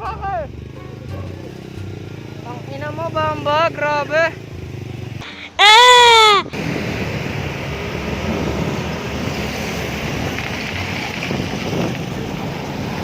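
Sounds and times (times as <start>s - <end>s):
wind buffeting microphone: 6.5s - 13.0s.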